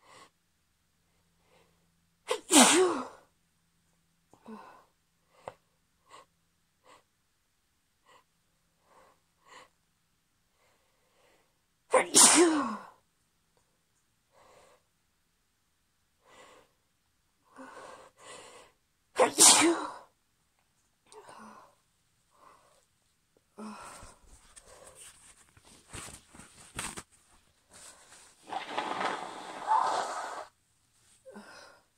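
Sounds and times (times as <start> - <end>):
woman sneezing: 2.3 - 3.2, 11.9 - 12.8, 19.2 - 20.0
sniffs and breaths: 23.6 - 26.5.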